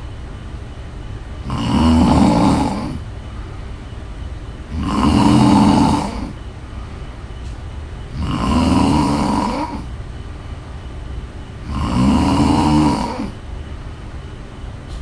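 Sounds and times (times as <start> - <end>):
woman snoring: 1.4 - 3.0, 4.7 - 6.4, 8.1 - 9.9, 11.6 - 13.4.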